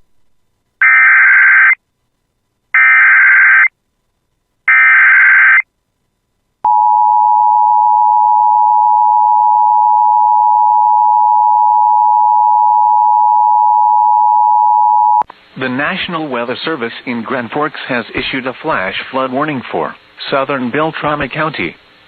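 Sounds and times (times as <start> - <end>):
steady attention signal tone: 6.7 - 15.2.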